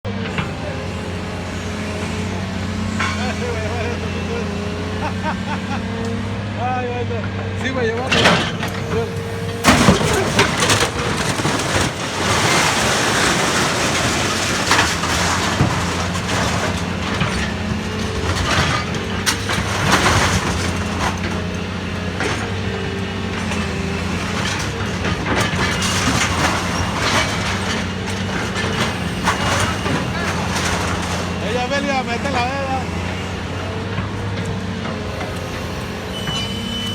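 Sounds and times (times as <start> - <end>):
machine engine drone: 0.1 - 36.9
sheet metal crunching: 8.0 - 22.7, 23.3 - 33.0.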